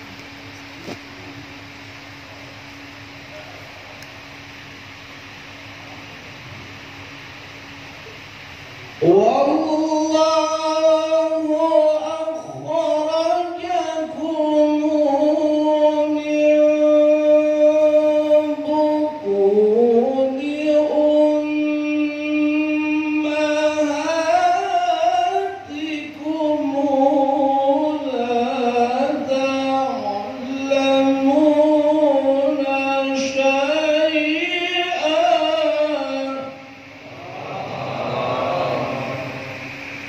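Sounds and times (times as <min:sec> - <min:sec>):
man reciting melodically: 0:09.0 - 0:38.8.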